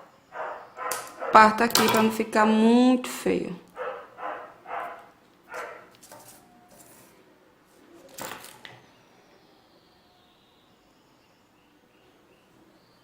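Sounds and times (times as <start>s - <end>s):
dog barking: 0.3s - 1.4s, 3.8s - 5.9s
scissors cutting paper: 5.6s - 7.2s.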